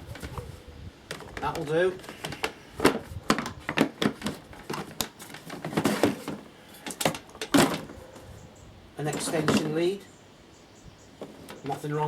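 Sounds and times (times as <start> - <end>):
tools and boxes knocking: 3.3 - 7.9, 9.1 - 9.8.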